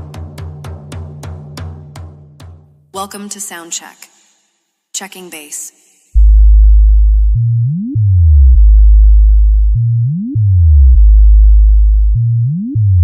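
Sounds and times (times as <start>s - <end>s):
deep synthesized bass tone: 6.2s - 13.0s.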